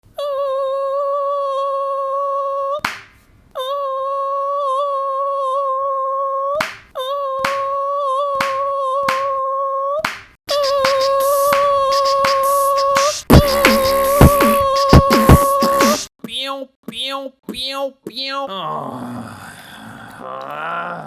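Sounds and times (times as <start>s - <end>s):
sharp hand claps: 2.9s - 3.2s, 6.6s - 6.9s, 7.5s - 7.7s, 8.4s - 9.3s, 10.1s - 16.0s.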